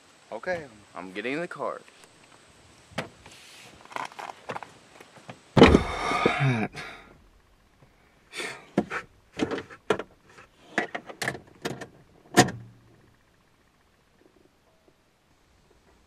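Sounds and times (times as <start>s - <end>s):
car door clunks and rattles: 5.6s - 6.4s, 8.8s - 10.2s, 10.8s - 12.8s.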